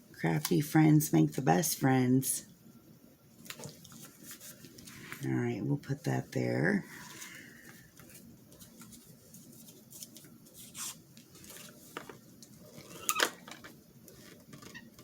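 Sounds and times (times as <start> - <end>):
paper rustling: 3.5 - 5.2, 6.9 - 15.0.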